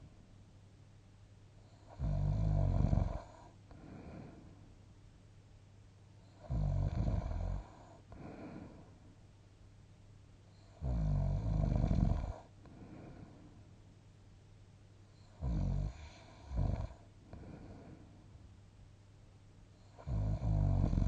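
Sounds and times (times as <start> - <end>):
person snoring: 1.8 - 4.4, 6.4 - 8.9, 10.8 - 13.3, 15.4 - 18.0, 19.9 - 21.0
faint breathing: 3.4 - 4.8, 7.6 - 9.2, 12.3 - 13.8, 15.1 - 18.5.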